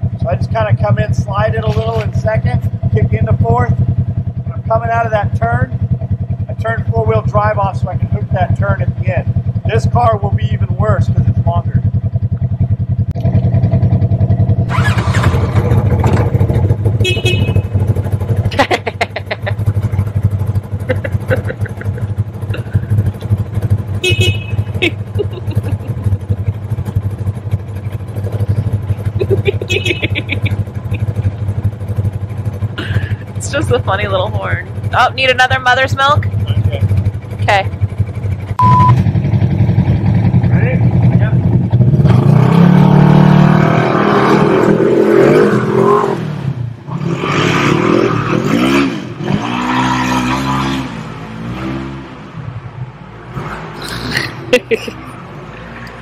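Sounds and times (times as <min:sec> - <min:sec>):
vehicle engine running: 0:00.0 - 0:46.9
high-pitched horn beeps: 0:17.0 - 0:17.9, 0:24.0 - 0:24.9, 0:38.6 - 0:39.0.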